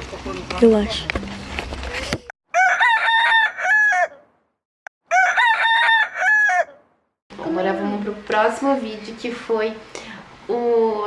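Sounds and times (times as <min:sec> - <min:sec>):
rooster crowing: 0:02.5 - 0:04.3, 0:05.1 - 0:06.9.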